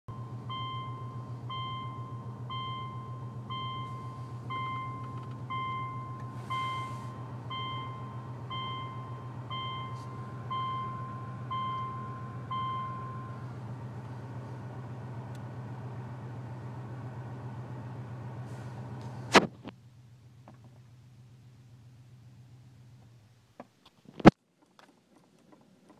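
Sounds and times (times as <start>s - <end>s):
car warning chime beeping: 0.1s - 13.5s
car air conditioning humming: 0.1s - 23.6s.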